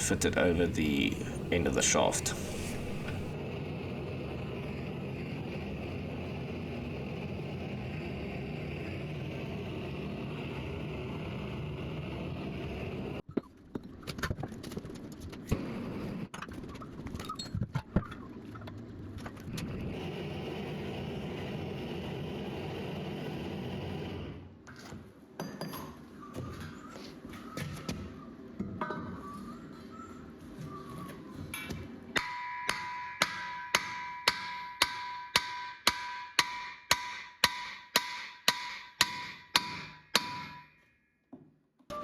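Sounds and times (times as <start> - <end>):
gas torch flame roaring: 0.0 - 13.2, 19.4 - 24.6.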